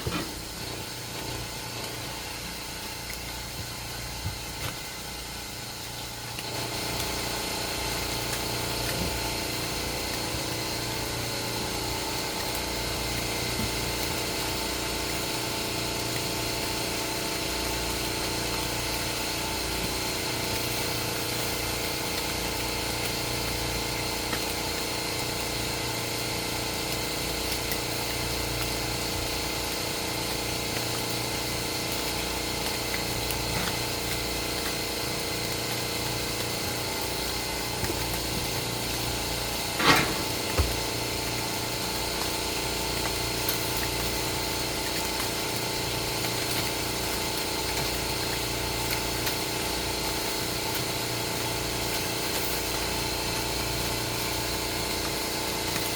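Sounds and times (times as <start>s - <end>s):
steady motor hum: 0.0s - 55.9s.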